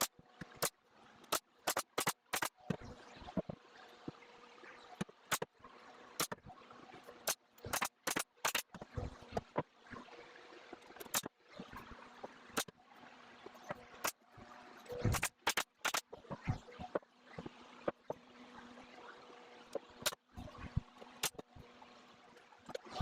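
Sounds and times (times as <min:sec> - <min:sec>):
nail gun shots into wood: 0:01.3 - 0:02.6, 0:07.3 - 0:08.8, 0:15.1 - 0:16.2.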